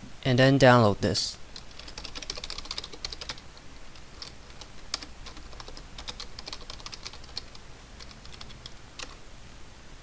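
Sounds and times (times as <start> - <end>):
typing on computer keyboard: 1.6 - 9.2.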